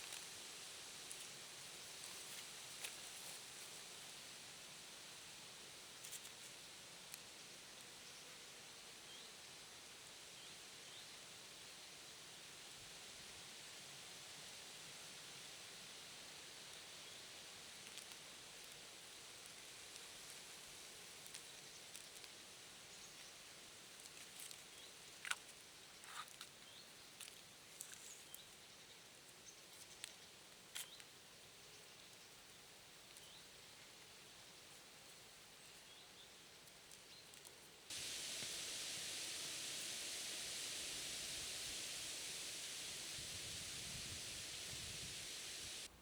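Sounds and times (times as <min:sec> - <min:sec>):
steady hiss: 0:37.9 - 0:46.0.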